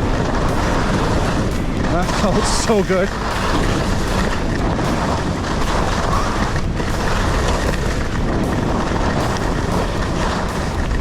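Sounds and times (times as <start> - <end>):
skis scraping over snow: 0.0 - 11.0
wind buffeting microphone: 0.0 - 11.0.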